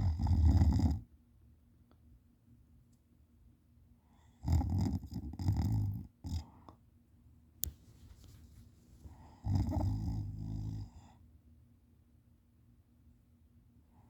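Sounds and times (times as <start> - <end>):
sharp click: 7.6 - 7.8.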